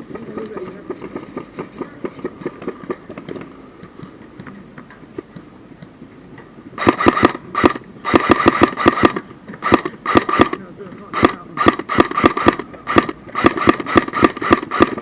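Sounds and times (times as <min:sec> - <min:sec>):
airsoft gun firing fast clicks: 0:06.8 - 0:15.0.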